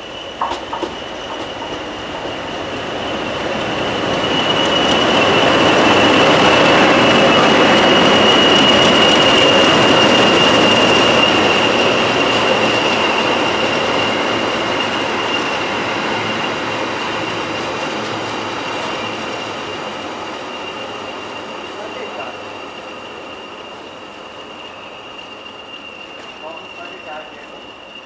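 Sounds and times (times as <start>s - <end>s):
locomotive engines and wheels rumbling: 0.0s - 28.0s
high-pitched whine: 20.7s - 28.0s.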